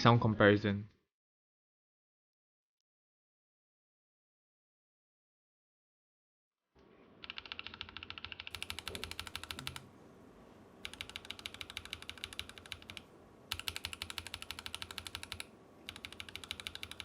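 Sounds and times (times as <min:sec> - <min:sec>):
mechanical keyboard typing: 0:07.2 - 0:09.9, 0:10.8 - 0:17.0.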